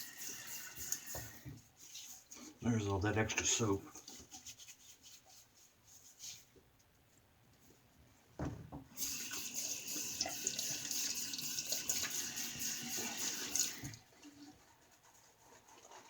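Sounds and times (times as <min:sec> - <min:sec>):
sink tap running: 0:00.0 - 0:01.5, 0:08.9 - 0:14.0.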